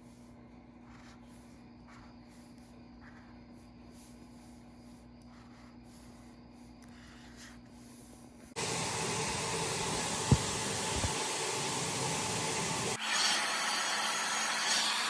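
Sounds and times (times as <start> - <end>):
loud rushing hiss: 8.6 - 15.0.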